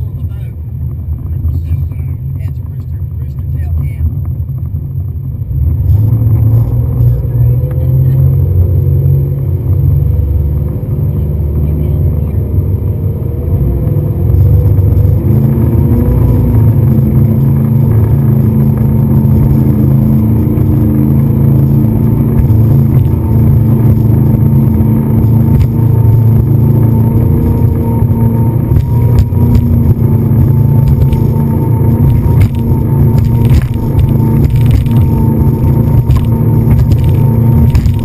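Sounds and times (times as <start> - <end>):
speedboat engine running: 0.0 - 38.0
sharp knocks: 30.7 - 38.0.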